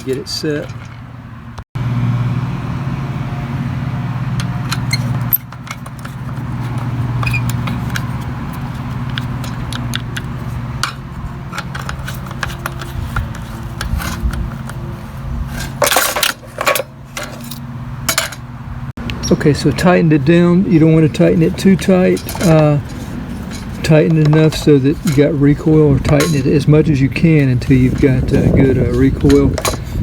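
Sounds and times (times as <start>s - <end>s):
hand tools clinking on metal: 0.0s - 1.0s, 15.6s - 18.4s, 20.7s - 30.0s
metallic clanks: 0.0s - 1.2s, 15.6s - 18.5s, 20.7s - 26.8s, 27.4s - 30.0s.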